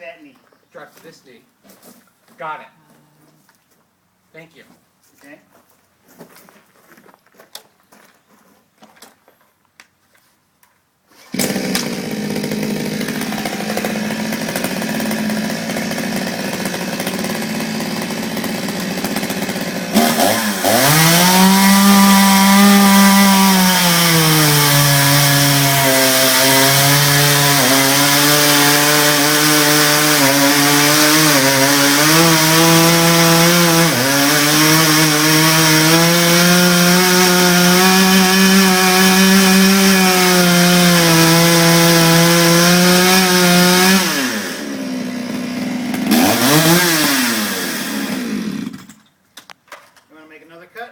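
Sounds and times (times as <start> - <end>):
chainsaw engine revving: 11.1 - 49.0.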